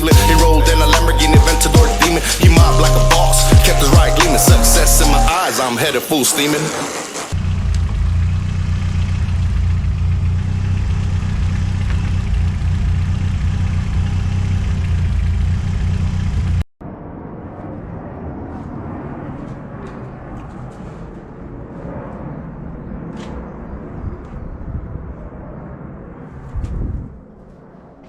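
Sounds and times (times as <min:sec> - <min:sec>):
outdoor background noise: 0:05.6 - 0:28.0
car engine idling: 0:07.4 - 0:16.6.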